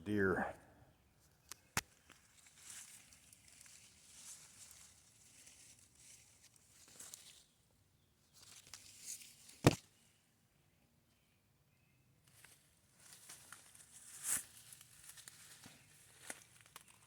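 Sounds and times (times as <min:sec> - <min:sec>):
footsteps through plants: 0:02.0 - 0:07.6, 0:12.3 - 0:17.0.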